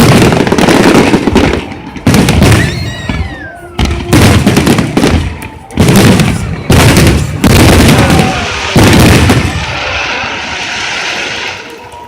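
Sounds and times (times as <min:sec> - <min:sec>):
firework crackling: 0:00.0 - 0:12.0
falling whistle: 0:02.6 - 0:03.8.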